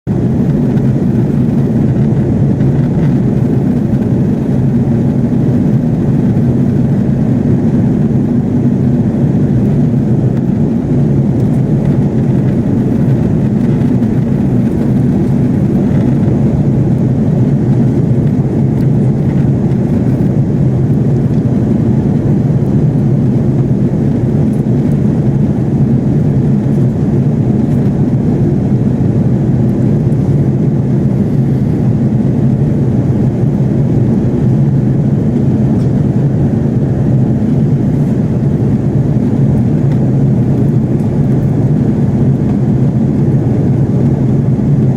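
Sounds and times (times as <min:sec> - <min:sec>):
airplane cabin drone: 0:00.1 - 0:44.9.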